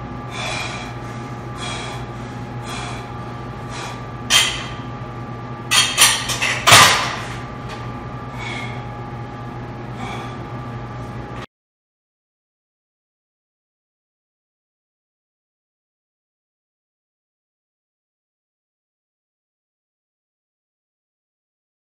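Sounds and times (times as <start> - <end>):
steady hum: 0.0 - 11.5
person breathing hard: 0.2 - 4.8, 8.2 - 9.0, 9.9 - 10.6.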